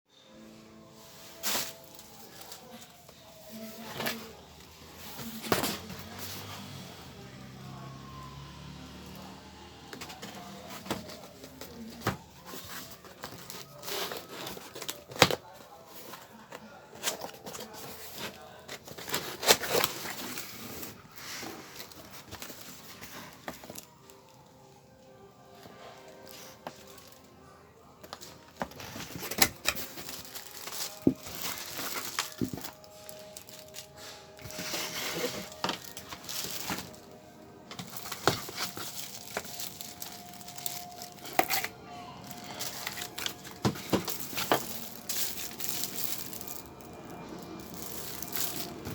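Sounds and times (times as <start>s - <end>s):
plastic packaging crinkling: 10.1s - 16.1s, 28.2s - 48.9s.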